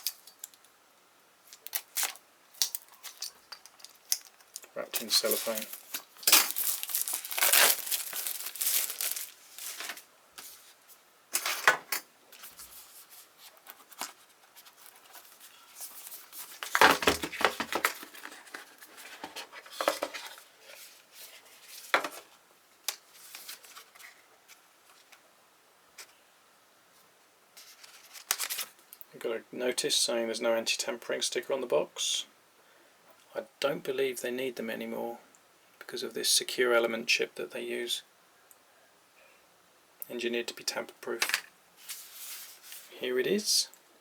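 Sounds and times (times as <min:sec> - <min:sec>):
cellophane crinkling and tearing: 0:01.4 - 0:10.0, 0:27.7 - 0:28.8.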